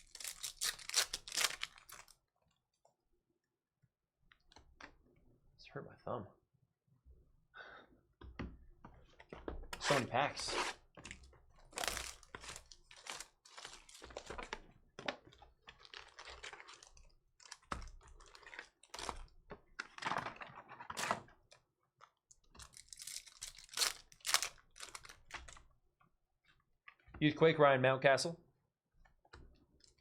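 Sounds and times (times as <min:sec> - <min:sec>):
foil wrappers tearing and crinkling: 0:00.0 - 0:02.2, 0:11.7 - 0:14.6, 0:15.7 - 0:19.2, 0:22.6 - 0:25.6.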